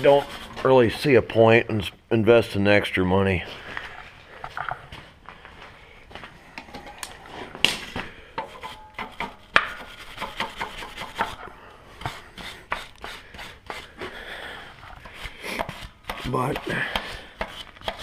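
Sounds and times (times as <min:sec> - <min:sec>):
knocks taps and scraping: 0:03.7 - 0:14.2, 0:14.8 - 0:18.0.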